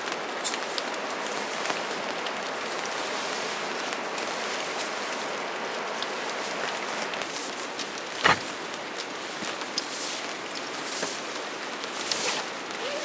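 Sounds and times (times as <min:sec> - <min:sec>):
steady rain: 0:00.0 - 0:07.2.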